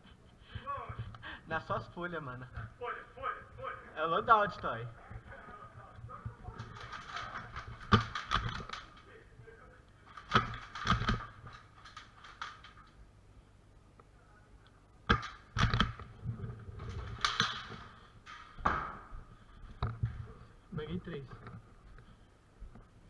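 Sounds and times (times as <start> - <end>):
airsoft guns firing: 2.6 - 9.2, 10.1 - 12.8.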